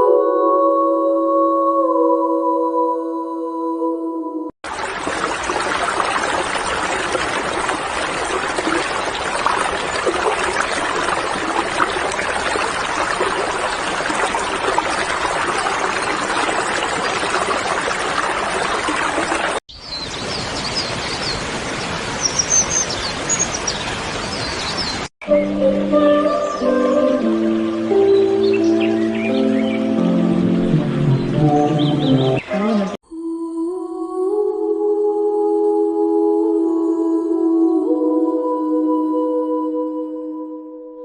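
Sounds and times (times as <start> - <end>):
running water rushing: 4.6 - 33.0
birds chirping: 19.7 - 33.0.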